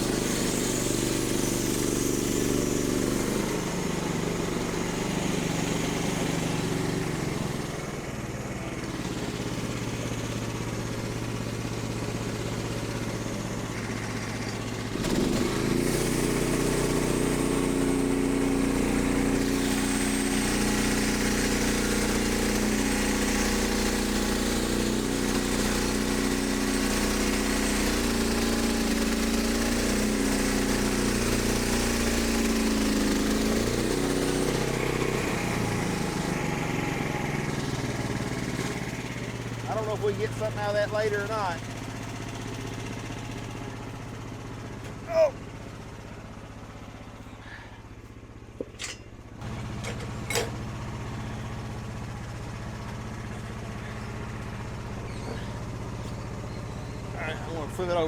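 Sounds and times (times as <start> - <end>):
small petrol engine running: 0.0 - 58.0.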